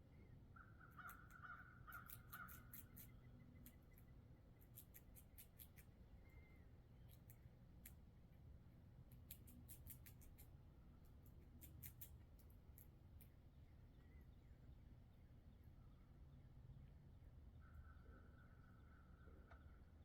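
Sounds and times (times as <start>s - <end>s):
squirrel gnawing walnut shell: 0.9s - 6.1s, 7.0s - 13.4s.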